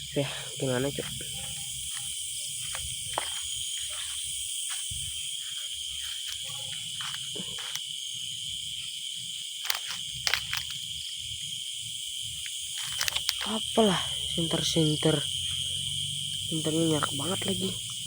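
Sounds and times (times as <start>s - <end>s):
crickets and insects chirping: 0.0s - 18.0s
sharp clicks: 9.6s - 10.8s, 12.8s - 13.6s.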